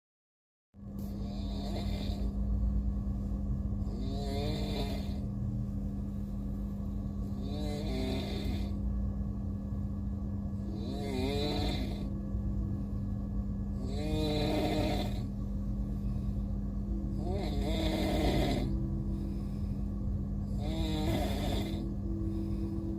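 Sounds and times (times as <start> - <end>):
moving train rumble: 0.8 - 22.9
person snoring loudly: 1.0 - 2.5, 3.8 - 5.3, 7.0 - 8.8, 10.6 - 12.2, 13.7 - 16.3, 16.9 - 22.9.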